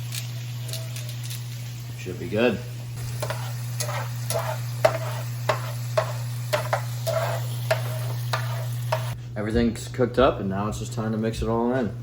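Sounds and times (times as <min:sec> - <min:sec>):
spatula scraping frying pan: 0:03.0 - 0:09.2.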